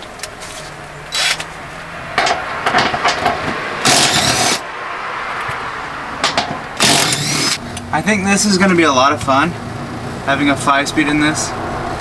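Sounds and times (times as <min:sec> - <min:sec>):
power seat motor whirring: 0:03.8 - 0:04.6, 0:06.8 - 0:07.8.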